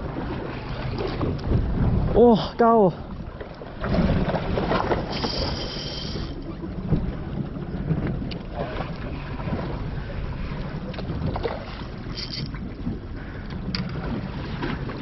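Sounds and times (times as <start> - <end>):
wind buffeting microphone: 0.0 - 5.6, 6.2 - 15.0
water washing around boat: 0.0 - 15.0.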